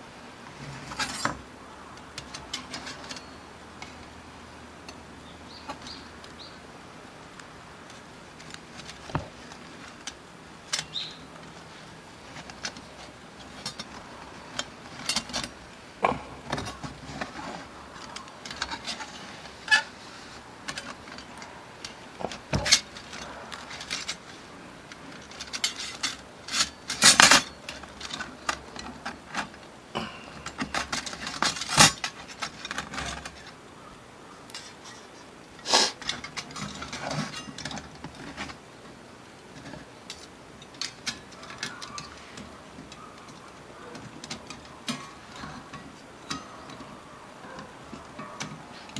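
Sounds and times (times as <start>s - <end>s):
small metal parts clinking: 20.6s - 33.6s.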